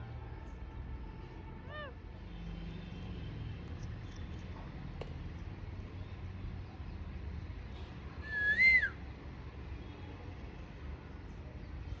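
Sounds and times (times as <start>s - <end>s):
parrot whistle: 8.2s - 9.0s.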